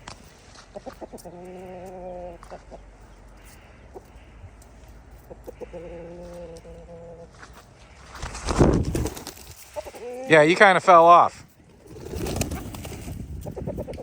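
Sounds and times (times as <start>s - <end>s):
hen clucking: 0.7s - 7.4s, 9.6s - 10.6s, 13.4s - 14.0s.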